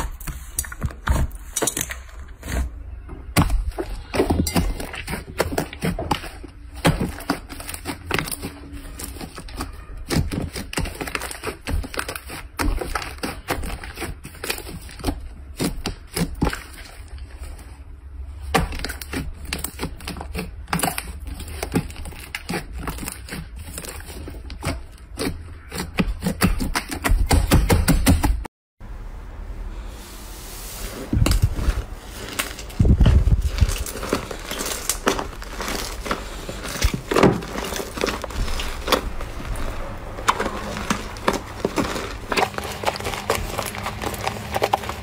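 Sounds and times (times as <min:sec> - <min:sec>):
slime crackling and popping: 0:32.2 - 0:45.0.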